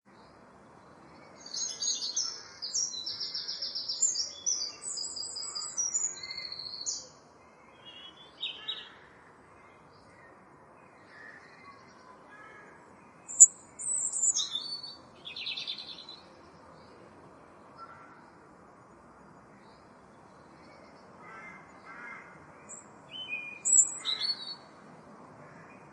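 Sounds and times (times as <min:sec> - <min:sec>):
blackbird singing: 0:01.2 - 0:09.1, 0:10.9 - 0:16.4, 0:22.6 - 0:24.7
faint bird calls: 0:17.7 - 0:18.3.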